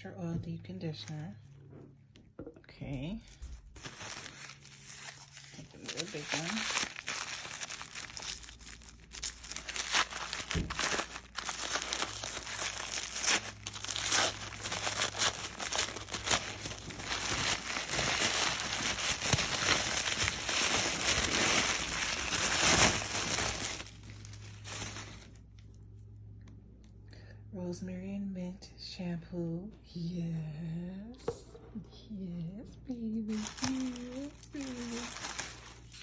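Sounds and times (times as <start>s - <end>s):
packaging crinkling and tearing: 3.4s - 25.7s, 33.1s - 36.0s.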